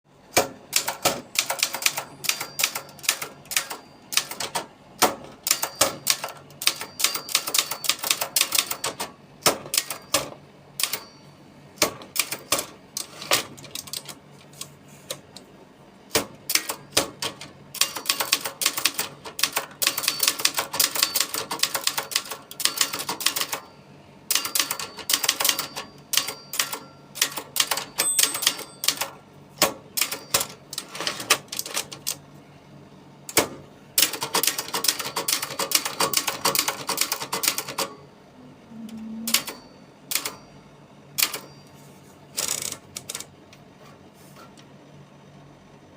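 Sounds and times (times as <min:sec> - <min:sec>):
typewriter keystroke clacks: 0:00.3 - 0:11.0, 0:11.8 - 0:15.3, 0:16.1 - 0:23.7, 0:24.3 - 0:32.2, 0:33.3 - 0:38.0, 0:39.3 - 0:40.4, 0:41.2 - 0:41.5, 0:42.4 - 0:43.3.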